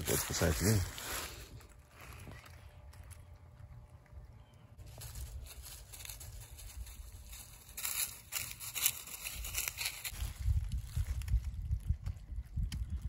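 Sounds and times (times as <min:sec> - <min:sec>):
dry leaves crunching underfoot: 0:00.0 - 0:03.4, 0:04.8 - 0:12.2
low rumble on microphone: 0:10.1 - 0:13.0.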